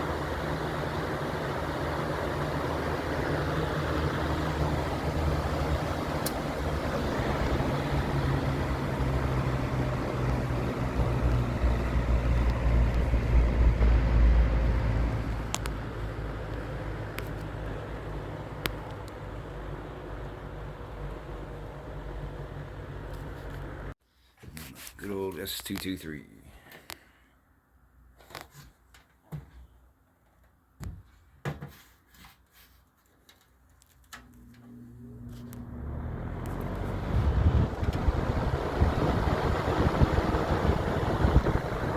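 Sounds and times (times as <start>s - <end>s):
box fan running: 0.0s - 23.9s, 34.0s - 41.9s
fan being handled clicks: 5.5s - 13.1s, 36.4s - 41.9s.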